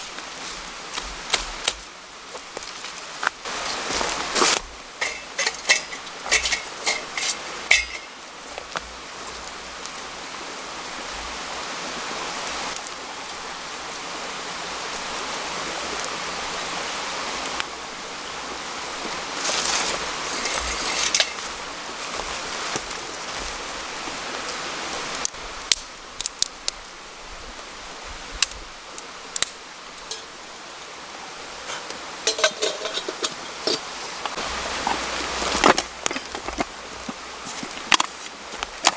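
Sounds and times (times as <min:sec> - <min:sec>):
running water: 0:00.0 - 0:38.9
camp gear clicking and knocking: 0:04.3 - 0:08.2, 0:19.5 - 0:21.5, 0:31.7 - 0:38.9.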